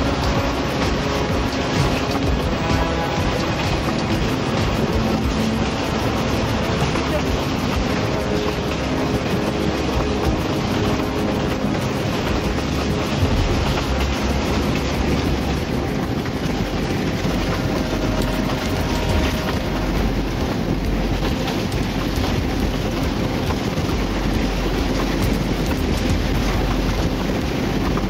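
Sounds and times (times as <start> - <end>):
train rumbling and rattling: 0.0 - 28.0.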